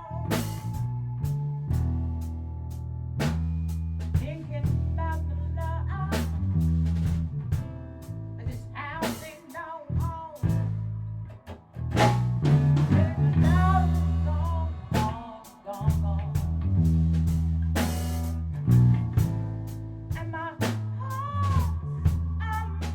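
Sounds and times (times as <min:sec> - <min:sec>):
bass guitar: 0:00.0 - 0:22.9
drum kit with cymbal crashes: 0:03.2 - 0:04.8, 0:11.9 - 0:22.9.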